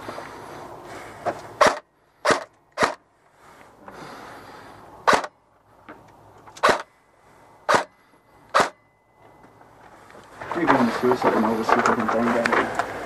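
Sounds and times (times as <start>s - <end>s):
airsoft gun shots: 1.6s - 3.0s, 5.0s - 5.3s, 6.6s - 6.9s, 7.7s - 8.8s.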